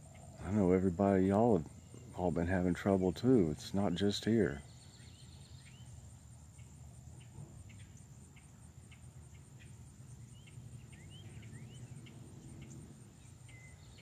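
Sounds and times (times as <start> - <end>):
high-pitched insect trill: 3.9 - 14.0
short bird chirps: 9.6 - 14.0.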